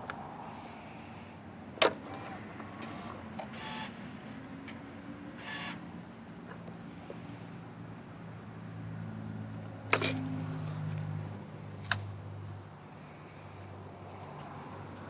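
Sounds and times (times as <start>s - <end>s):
electric starter whirring: 1.8s - 4.0s, 5.4s - 5.8s.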